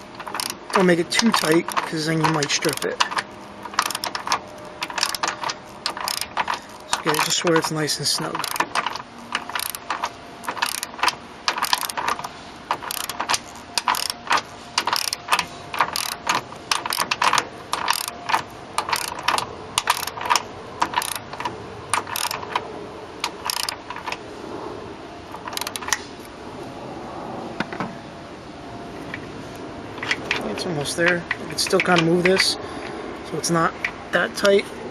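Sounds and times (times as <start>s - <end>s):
torque wrench ratchet clicking: 0.0s - 22.6s, 23.2s - 24.2s, 25.3s - 26.0s, 30.0s - 32.6s.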